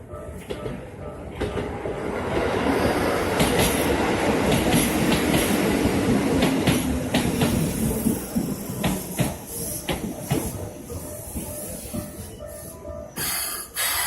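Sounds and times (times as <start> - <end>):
train wheels clacking over rail joints: 3.3 - 12.2.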